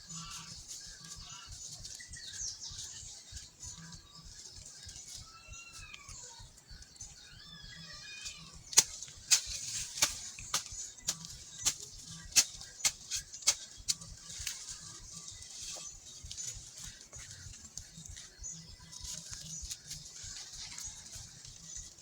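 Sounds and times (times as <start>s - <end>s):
birds chirping: 0.0s - 22.0s
hoe striking soil: 8.7s - 14.6s.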